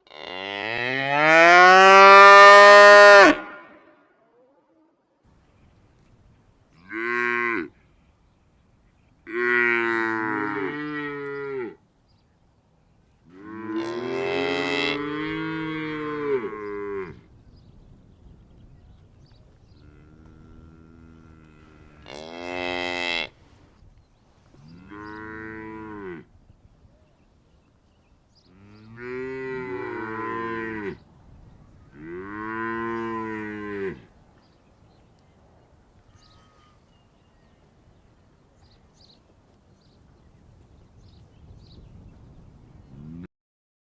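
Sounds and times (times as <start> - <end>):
cows mooing: 0.0 - 4.9, 13.3 - 17.2, 19.8 - 23.4.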